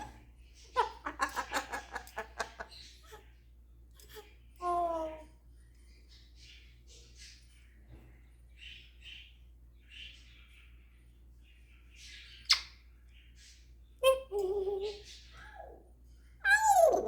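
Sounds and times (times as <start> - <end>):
parrot chirps and clicks: 1.0 - 2.7, 12.4 - 12.8.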